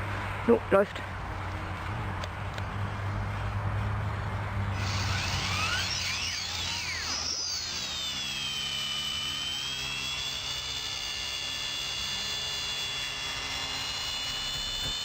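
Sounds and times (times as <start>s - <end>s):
rc helicopter motor whine: 4.7s - 15.0s.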